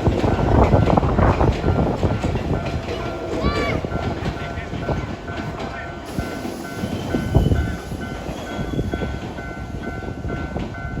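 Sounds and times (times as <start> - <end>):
level-crossing warning bell: 0.0 - 11.0
train rumbling and clattering: 0.0 - 11.0.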